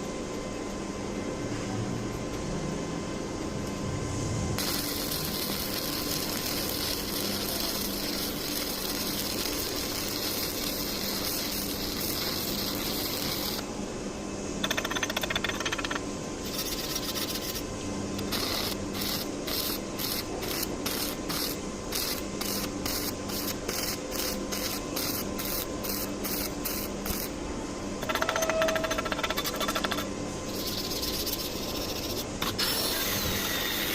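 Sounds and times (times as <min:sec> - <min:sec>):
arc welding crackle: 0:04.6 - 0:13.7, 0:14.6 - 0:27.4, 0:28.0 - 0:33.9.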